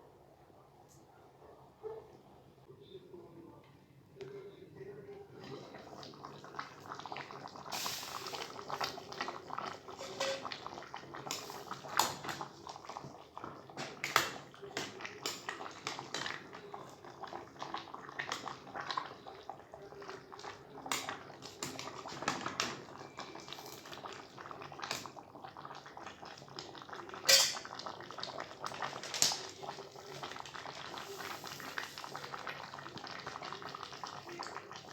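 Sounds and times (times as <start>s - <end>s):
curry bubbling and popping: 4.2s - 34.9s.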